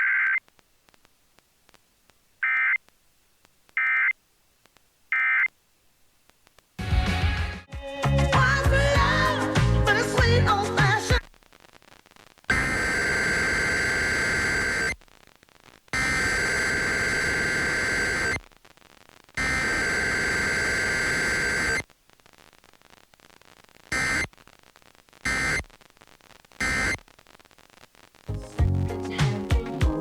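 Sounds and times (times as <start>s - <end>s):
two-tone digital data bursts: 16.0s - 18.4s, 19.4s - 21.8s, 23.9s - 24.3s, 25.2s - 25.7s, 26.6s - 27.0s.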